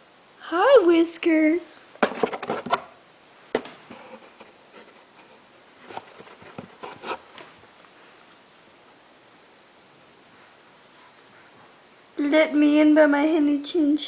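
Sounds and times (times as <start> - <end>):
cat scratching in cardboard box: 3.9 - 7.3.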